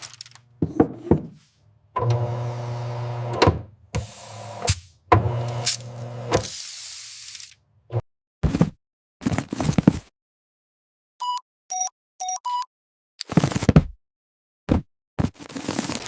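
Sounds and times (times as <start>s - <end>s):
machinery humming: 2.0s - 6.4s
short electronic beeps: 11.2s - 12.7s.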